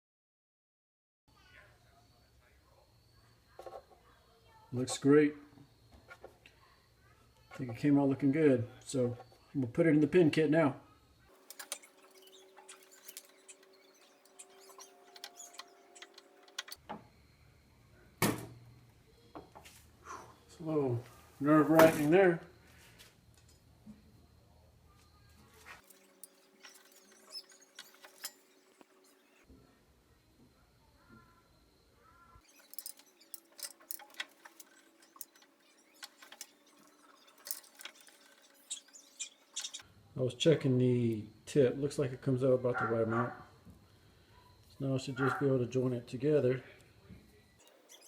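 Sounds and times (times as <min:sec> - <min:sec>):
small parts clicking and tapping: 0:11.3 - 0:16.8, 0:25.8 - 0:29.4, 0:32.4 - 0:39.8, 0:47.6 - 0:48.0.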